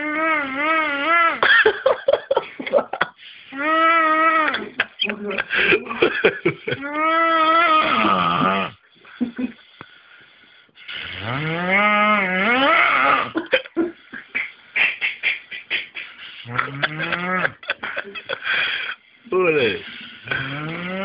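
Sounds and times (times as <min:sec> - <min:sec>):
man snoring: 0:06.8 - 0:08.8, 0:10.9 - 0:13.4, 0:16.4 - 0:17.7, 0:20.2 - 0:21.0.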